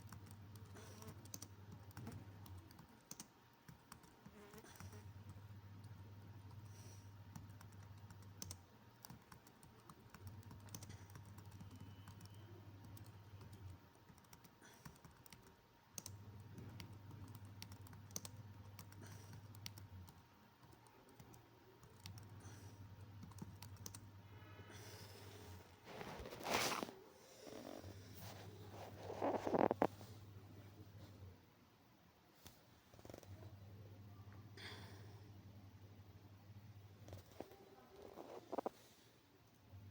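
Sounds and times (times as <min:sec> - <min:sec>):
keyboard typing: 0:00.0 - 0:06.6, 0:07.3 - 0:24.0.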